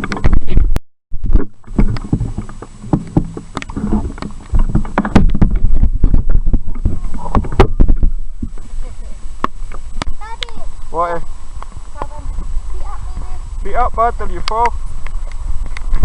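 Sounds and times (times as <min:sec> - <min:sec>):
handheld camera knocks and rattles: 0:00.0 - 0:08.1
wind rumble on microphone: 0:00.0 - 0:16.0.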